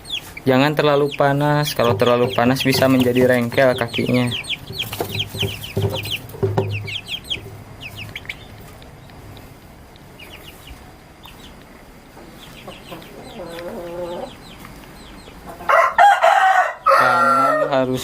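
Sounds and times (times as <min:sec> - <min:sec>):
chicken clucking: 0:00.0 - 0:18.0
chicks peeping: 0:00.0 - 0:18.0.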